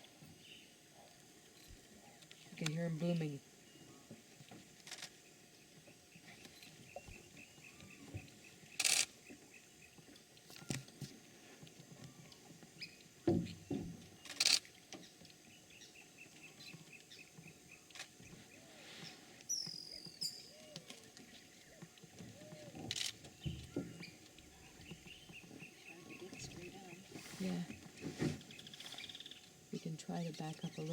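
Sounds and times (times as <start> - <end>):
birds calling: 5.2 - 30.9
insects trilling: 12.0 - 30.9.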